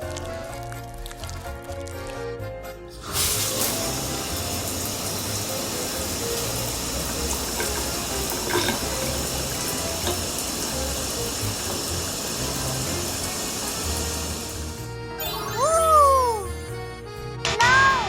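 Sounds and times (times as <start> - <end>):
soft background music: 0.0 - 18.0
water running: 3.0 - 16.4.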